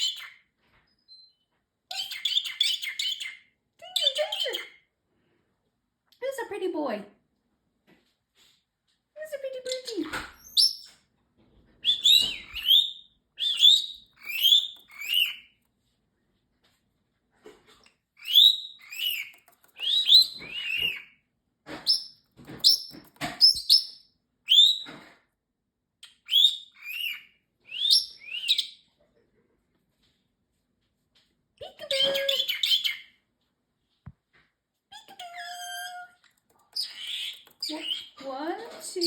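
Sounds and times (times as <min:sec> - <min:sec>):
parrotlet chirping: 0:00.0 - 0:00.4, 0:01.0 - 0:04.8, 0:09.7 - 0:11.0, 0:11.8 - 0:15.6, 0:18.2 - 0:21.2, 0:21.8 - 0:24.9, 0:26.0 - 0:28.8, 0:31.9 - 0:33.2, 0:34.9 - 0:39.0.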